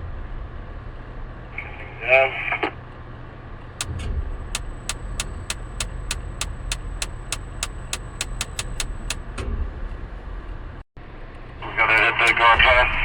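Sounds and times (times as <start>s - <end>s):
tower crane humming: 2.9s - 13.0s
sharp regular clicks: 3.8s - 9.4s.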